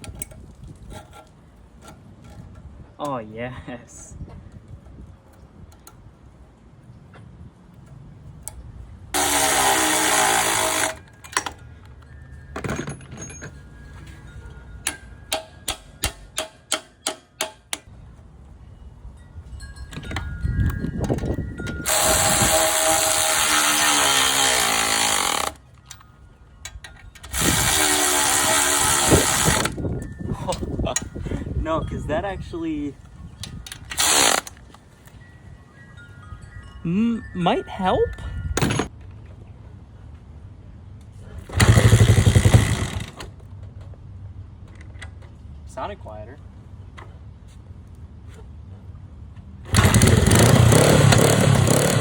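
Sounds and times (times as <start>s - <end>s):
power tool grinding metal: 9.2s - 11.0s, 21.8s - 25.6s, 27.3s - 29.7s.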